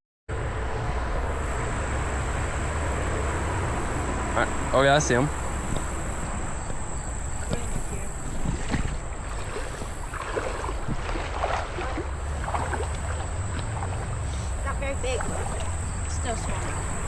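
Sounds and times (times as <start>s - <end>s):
steady high whine: 0.3s - 9.4s
water noise: 0.3s - 17.0s
wind buffeting microphone: 0.3s - 17.0s.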